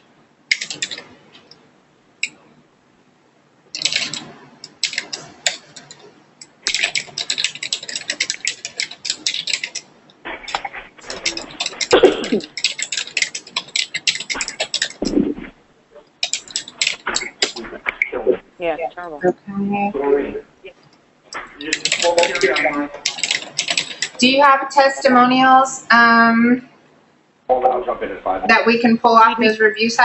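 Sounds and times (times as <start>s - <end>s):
fast typing on a keyboard: 0.5s - 1.1s, 3.8s - 15.3s, 16.1s - 18.1s, 21.4s - 24.5s.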